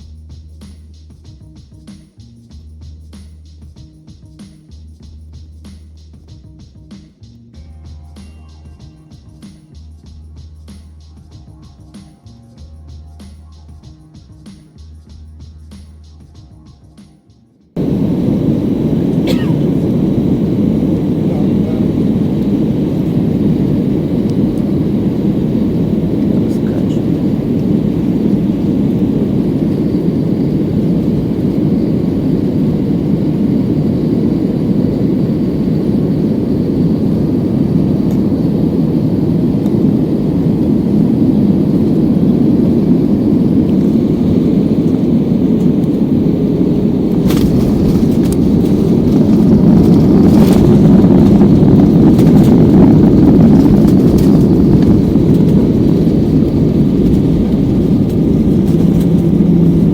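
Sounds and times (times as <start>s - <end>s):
airliner cabin engine rumble: 17.8s - 59.9s.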